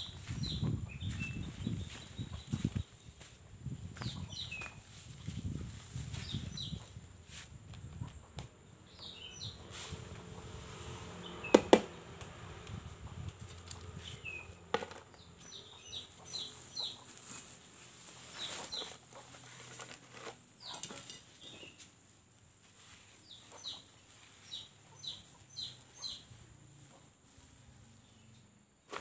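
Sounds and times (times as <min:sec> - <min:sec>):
bird chirping: 0:00.0 - 0:03.2, 0:08.8 - 0:09.7, 0:13.7 - 0:17.0
sharp knocks: 0:11.5 - 0:11.9.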